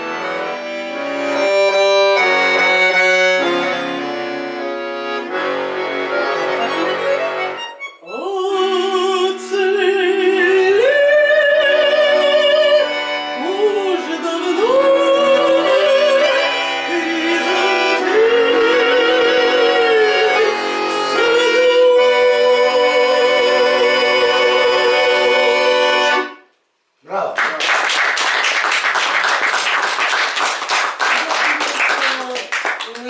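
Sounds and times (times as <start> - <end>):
person singing with wide vibrato: 8.0 - 26.4.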